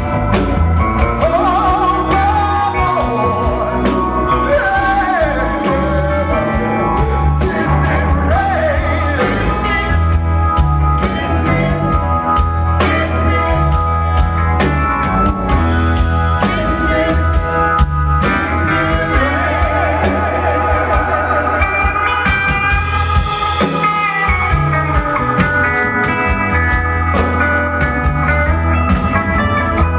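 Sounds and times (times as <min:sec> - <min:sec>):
heavy bass line: 0:00.0 - 0:29.9
live blues band: 0:00.0 - 0:29.9
person singing: 0:01.2 - 0:10.1, 0:16.4 - 0:17.6, 0:18.2 - 0:22.9.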